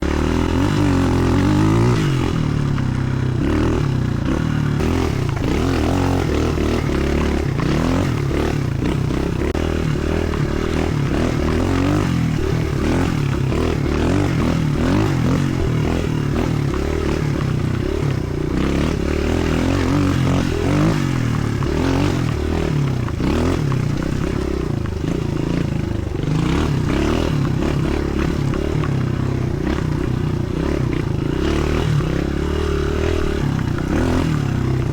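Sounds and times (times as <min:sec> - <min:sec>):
motorbike engine revving: 0:00.0 - 0:34.9.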